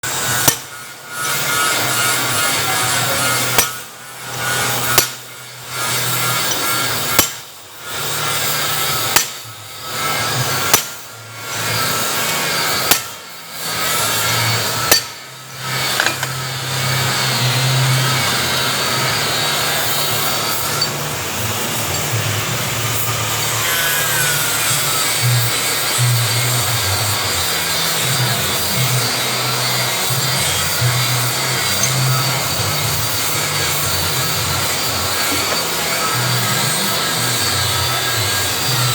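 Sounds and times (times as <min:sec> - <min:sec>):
workshop noise with low hum: 0:00.0 - 0:38.9
hammer striking metal: 0:00.4 - 0:02.5, 0:03.2 - 0:03.8, 0:04.7 - 0:05.3, 0:06.2 - 0:07.5, 0:09.1 - 0:09.5, 0:10.6 - 0:11.0, 0:12.8 - 0:13.2, 0:14.2 - 0:15.2, 0:15.8 - 0:16.5, 0:18.2 - 0:23.2, 0:30.7 - 0:32.6, 0:35.0 - 0:36.4.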